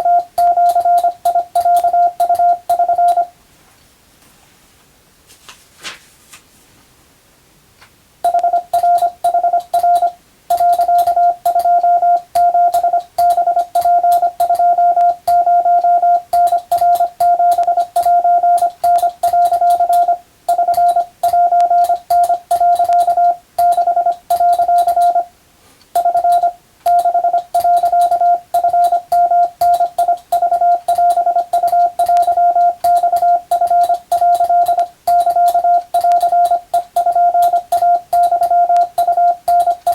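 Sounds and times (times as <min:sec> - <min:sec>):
morse code tone beeping: 0:00.0 - 0:03.3, 0:08.3 - 0:25.3, 0:26.0 - 0:39.9
telegraph key clicking: 0:16.3 - 0:25.2, 0:26.0 - 0:39.9.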